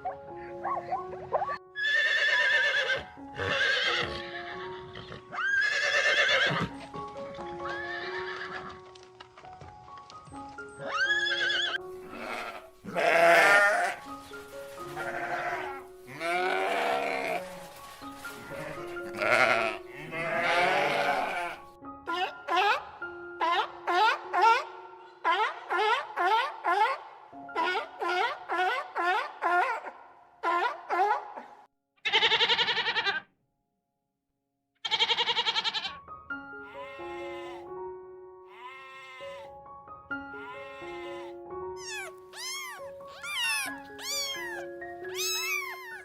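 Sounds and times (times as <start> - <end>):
background music: 0.0 - 31.7, 35.0 - 46.0
farm animal calling: 0.3 - 6.8, 10.8 - 22.8, 32.0 - 33.3, 34.8 - 36.0, 36.6 - 37.7, 38.5 - 39.6, 40.4 - 46.0.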